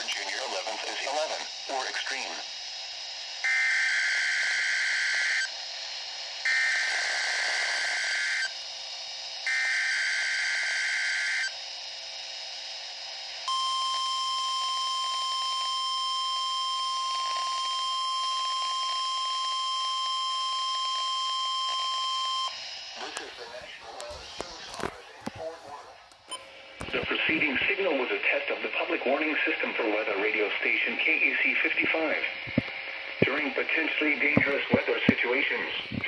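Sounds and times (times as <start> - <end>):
steady warning alarm tone: 0.0 - 26.6
warbling data tone bursts: 6.5 - 8.6.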